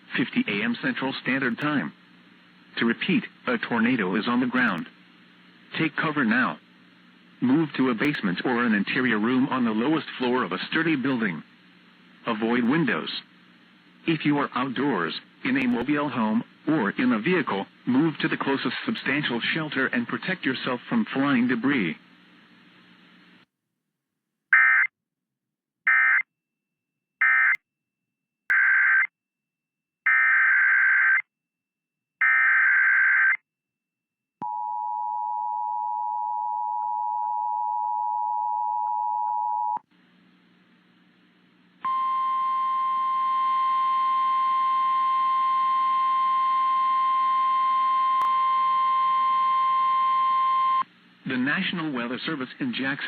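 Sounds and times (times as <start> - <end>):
steady single alarm tone: 41.8 - 50.8
two-tone attention signal: 41.9 - 50.8.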